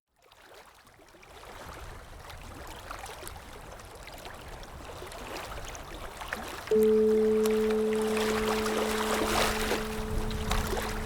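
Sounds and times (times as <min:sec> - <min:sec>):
stream water babbling: 0:04.0 - 0:11.0.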